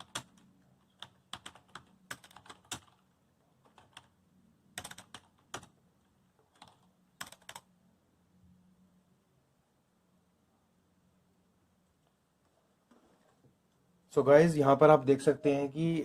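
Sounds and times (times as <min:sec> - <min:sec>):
keyboard keys clicking: 0:00.0 - 0:03.0, 0:04.8 - 0:05.7, 0:06.5 - 0:07.6
faint low hum: 0:00.0 - 0:16.0.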